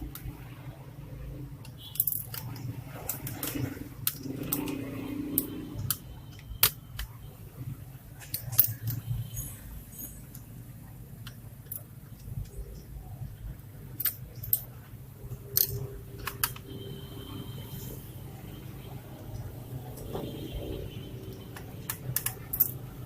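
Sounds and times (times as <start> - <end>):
clicks of small parts: 14.0 - 14.7, 15.5 - 16.7, 21.3 - 22.8.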